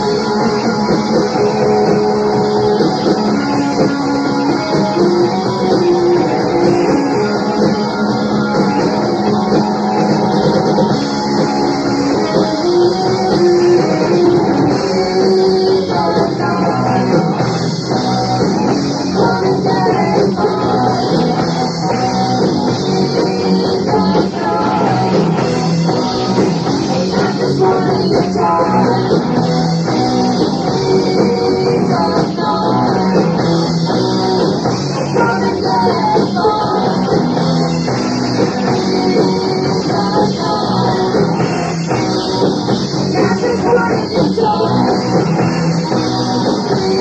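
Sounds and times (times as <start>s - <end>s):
hard rock band playing live: 0.0s - 47.0s
woman singing: 15.0s - 17.3s, 19.2s - 21.4s, 23.1s - 25.3s, 26.0s - 29.5s, 30.7s - 33.3s, 35.1s - 37.3s, 39.1s - 41.3s, 43.1s - 45.4s.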